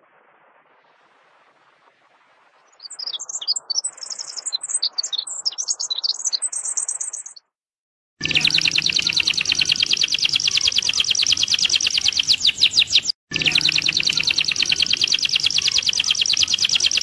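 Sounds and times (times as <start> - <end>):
songbird trilling: 2.8 - 7.4, 8.2 - 17.0.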